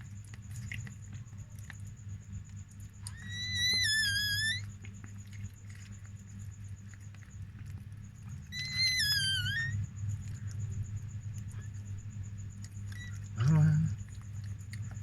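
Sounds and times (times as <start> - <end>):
steady low hum: 0.0 - 15.0
puppy squealing cries: 3.0 - 4.7, 8.5 - 9.8, 12.9 - 13.2.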